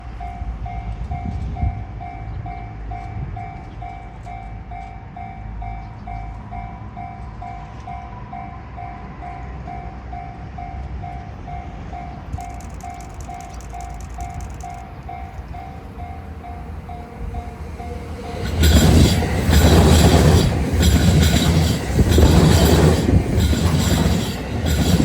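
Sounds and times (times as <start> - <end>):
train rumble: 0.0 - 25.0
level crossing warning bell: 14.7 - 25.0.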